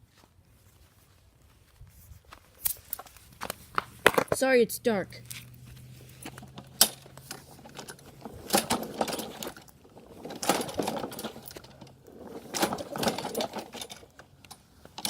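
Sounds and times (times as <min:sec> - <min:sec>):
lawn mower starter cord pulls: 0:05.2 - 0:15.0.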